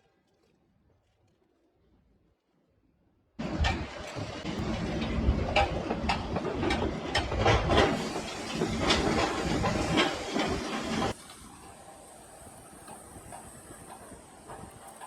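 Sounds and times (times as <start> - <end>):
steady rushing hiss: 7.7 - 15.0.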